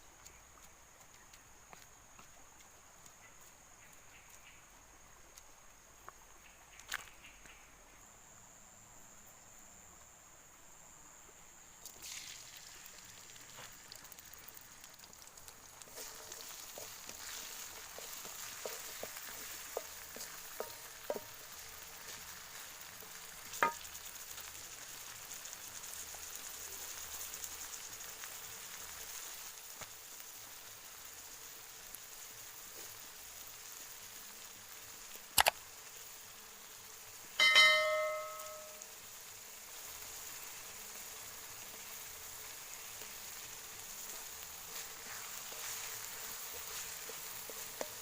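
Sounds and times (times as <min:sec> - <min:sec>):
fish frying in oil: 0:11.8 - 0:48.0
utensil clanging on metal pan: 0:23.6 - 0:23.8, 0:37.4 - 0:38.8
light clinks: 0:37.4 - 0:38.8.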